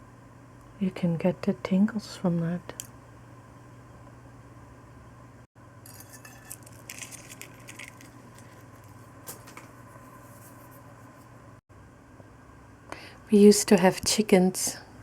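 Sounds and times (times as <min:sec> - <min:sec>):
steady low hum: 0:00.0 - 0:15.0
egg shell cracking: 0:05.9 - 0:09.7.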